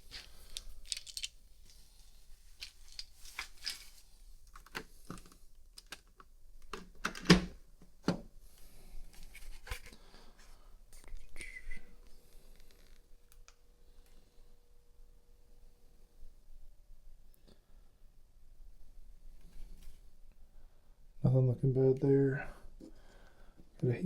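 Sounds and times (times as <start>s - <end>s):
objects handled by hand: 0.0s - 11.4s.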